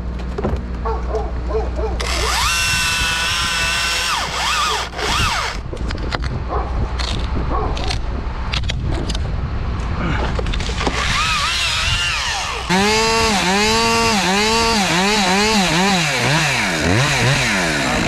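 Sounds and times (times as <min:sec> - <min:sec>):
truck engine drone: 0:00.0 - 0:05.8, 0:09.4 - 0:18.0
chainsaw revving and cutting wood: 0:02.0 - 0:05.6, 0:10.6 - 0:18.0.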